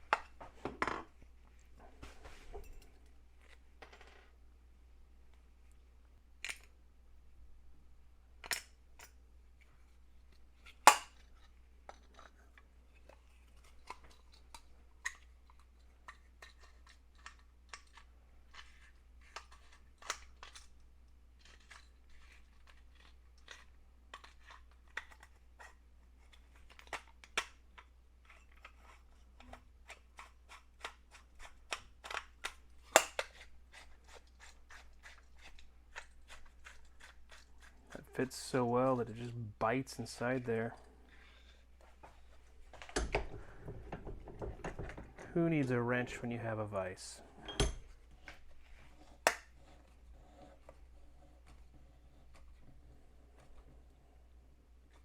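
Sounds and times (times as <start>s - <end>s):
hard parts clicking and knocking: 42.1s - 45.4s.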